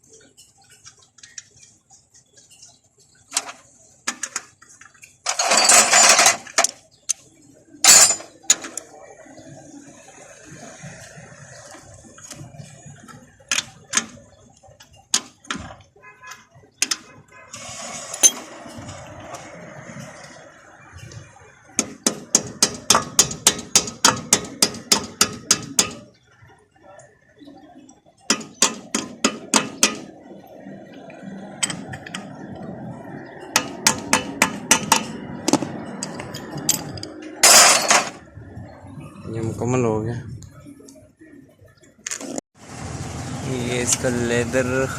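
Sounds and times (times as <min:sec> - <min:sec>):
tools clinking: 0:03.4 - 0:07.2, 0:07.8 - 0:08.9, 0:33.5 - 0:38.2.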